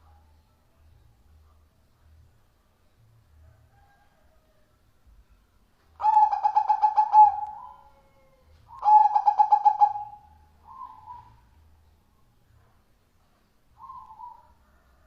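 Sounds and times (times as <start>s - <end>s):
dove cooing: 6.0s - 11.5s, 13.8s - 15.0s.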